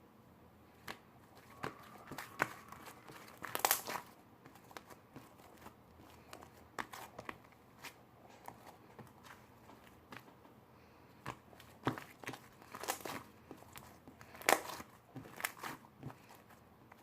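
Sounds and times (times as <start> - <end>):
crinkling rustles: 11.1 - 17.0.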